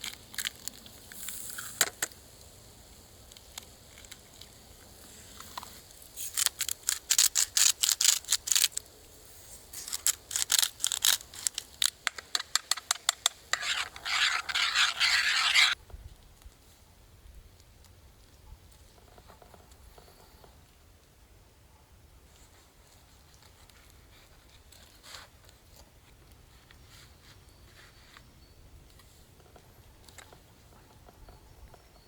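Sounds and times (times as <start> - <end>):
metal utensil scraping cookware: 13.5 - 15.8.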